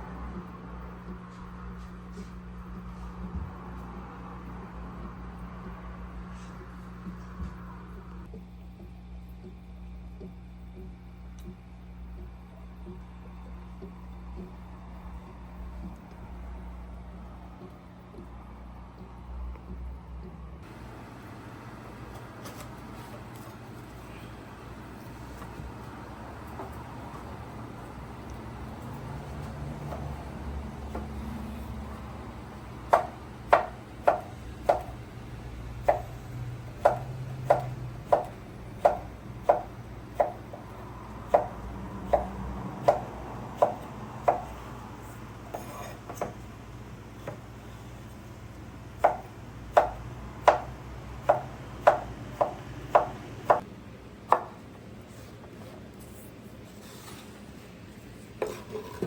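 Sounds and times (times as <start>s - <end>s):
knife chopping on cutting board: 32.8s - 35.0s, 35.8s - 36.2s, 36.8s - 40.6s, 41.3s - 44.6s, 49.0s - 53.6s, 54.3s - 54.6s.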